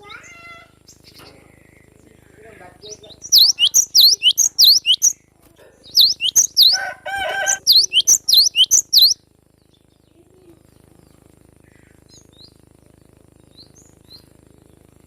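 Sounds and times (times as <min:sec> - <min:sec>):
bird singing whistled notes: 0:02.8 - 0:05.2, 0:05.9 - 0:09.2.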